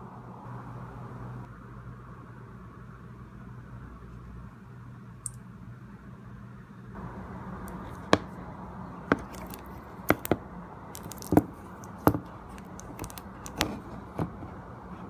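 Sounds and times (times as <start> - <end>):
low hum and hiss: 0.0 - 15.0
smartphone parts clicking: 7.7 - 8.3, 9.1 - 14.4.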